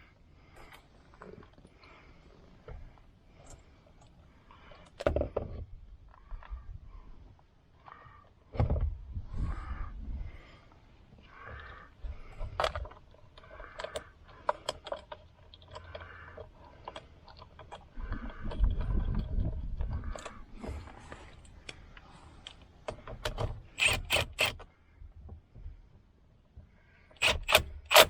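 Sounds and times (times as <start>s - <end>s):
sharp clicks: 21.4s - 24.6s, 27.2s - 28.0s.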